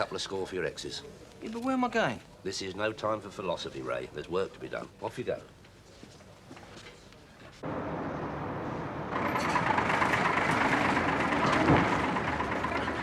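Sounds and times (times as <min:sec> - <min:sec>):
vehicle engine rumble: 0:07.6 - 0:13.0.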